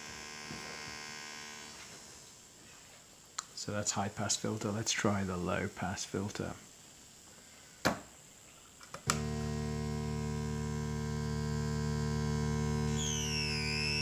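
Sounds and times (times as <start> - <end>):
buzzing synthesizer drone: 0.0 - 2.4, 9.1 - 14.0
thin high whistle sweeping: 12.9 - 14.0.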